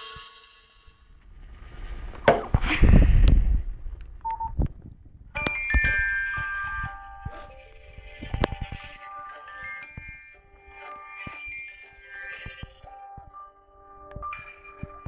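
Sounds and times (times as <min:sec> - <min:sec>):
chime-like ringtone melody: 0:05.4 - 0:15.0.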